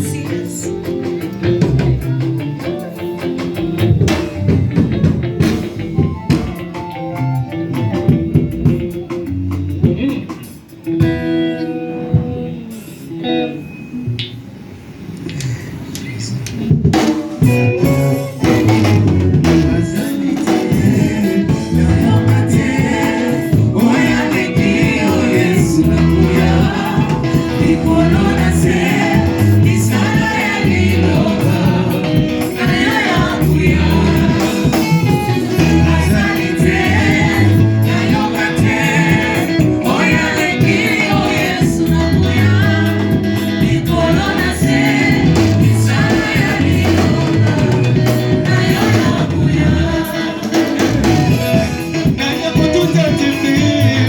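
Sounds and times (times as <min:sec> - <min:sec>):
group of singers: 0:00.0 - 0:03.2, 0:17.4 - 0:54.0
band with bass and drums: 0:00.0 - 0:54.0.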